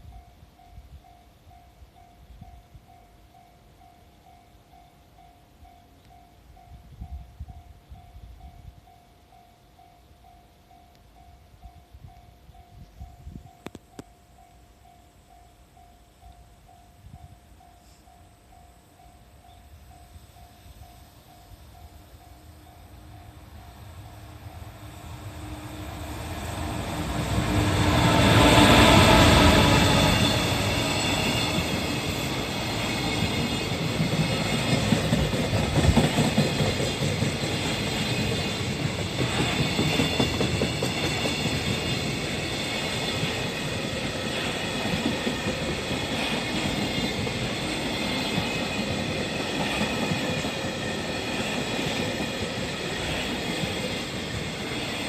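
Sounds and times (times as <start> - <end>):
electric locomotive passing: 0.0 - 55.0
wheels clacking over rails: 25.9 - 55.0.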